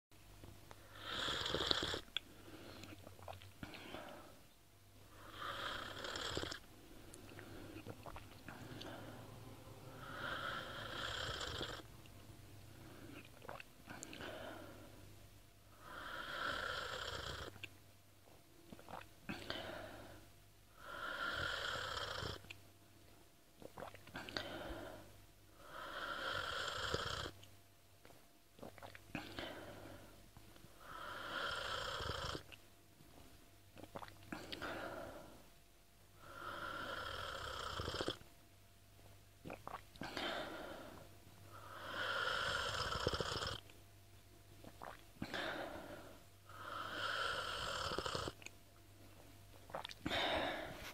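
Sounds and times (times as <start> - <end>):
mouth clicks and swallowing: 1.7 - 3.8, 13.2 - 14.2, 18.7 - 19.1, 23.6 - 24.4, 28.0 - 29.1, 33.8 - 34.6, 39.4 - 40.0, 44.6 - 45.0, 49.7 - 50.0
person sipping and slurping tea: 7.2 - 9.3, 44.6 - 45.0
person slurping tea: 39.5 - 39.8, 44.6 - 45.0.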